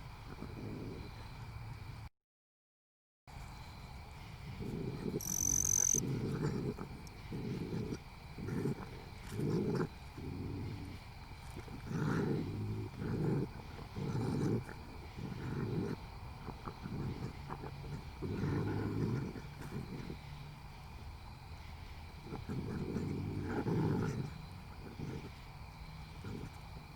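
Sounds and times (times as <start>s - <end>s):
low rough growls: 0.0s - 1.6s, 4.4s - 26.9s.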